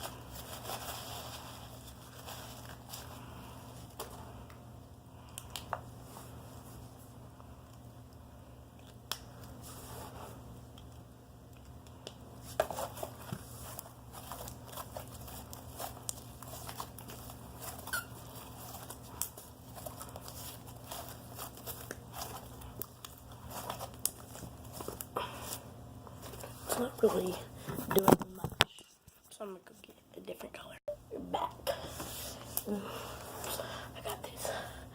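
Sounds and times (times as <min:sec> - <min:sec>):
clicks and crackles of slime: 0:18.7 - 0:25.1.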